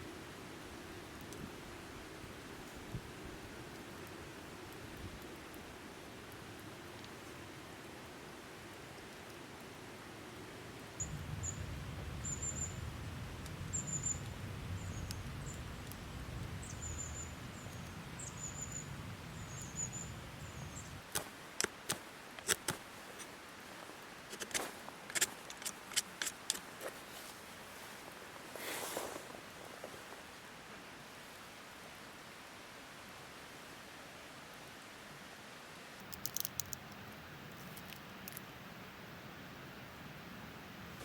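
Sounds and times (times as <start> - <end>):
small bird chirping: 11.0 - 12.9, 13.7 - 21.0
sharp snaps and cracks: 21.0 - 23.3, 24.3 - 26.7, 36.0 - 38.5.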